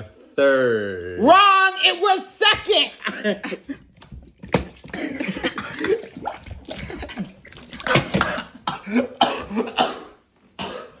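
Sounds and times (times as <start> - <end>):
person coughing and spluttering wetly: 3.0 - 11.0.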